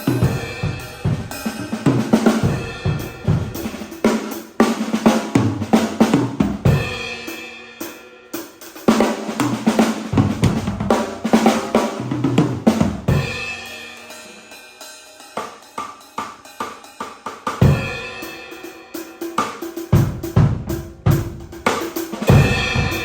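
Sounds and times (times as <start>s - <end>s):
cymbals ringing: 0.0s - 4.6s, 13.1s - 19.9s, 22.2s - 23.0s
drum kit playing: 0.0s - 23.0s.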